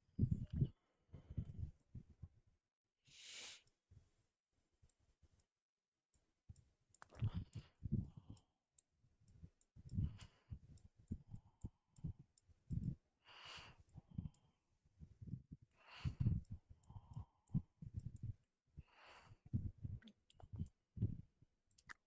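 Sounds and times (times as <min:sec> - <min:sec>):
short hiss: 0:03.1 - 0:03.6.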